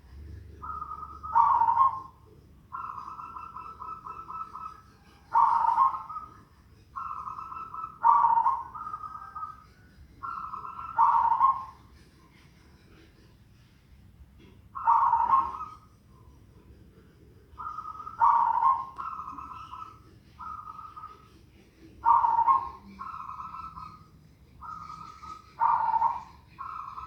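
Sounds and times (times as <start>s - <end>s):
dove cooing with purring trill: 0.0s - 13.7s, 14.4s - 27.0s.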